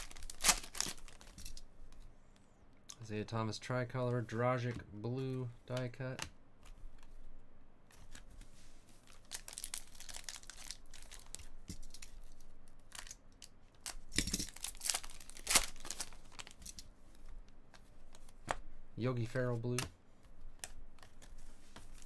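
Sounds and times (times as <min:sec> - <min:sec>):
card pack wrappers ripping: 0:00.0 - 0:01.6, 0:09.1 - 0:12.1, 0:13.8 - 0:16.6.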